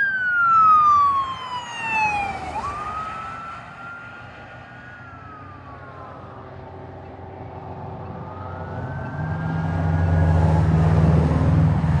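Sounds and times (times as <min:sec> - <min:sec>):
siren wailing: 0:00.0 - 0:07.0, 0:07.9 - 0:10.9
vehicle engine: 0:00.0 - 0:12.0.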